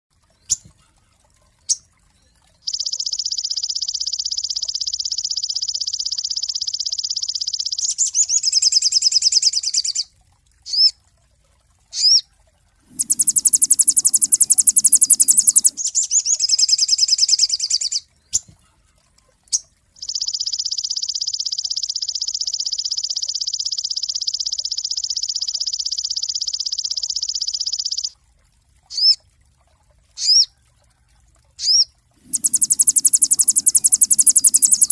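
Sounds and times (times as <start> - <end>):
bird singing high trills: 12.9 - 18.0, 31.6 - 34.9.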